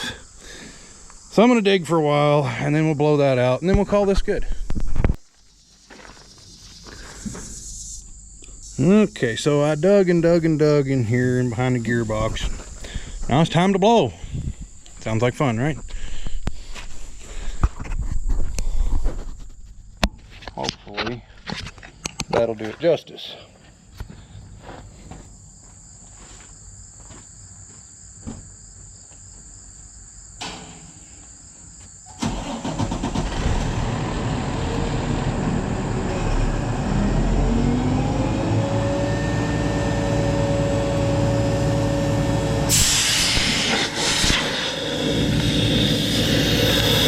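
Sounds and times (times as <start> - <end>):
blower engine whining: 32.2 - 47.0
rush of air: 42.7 - 47.0.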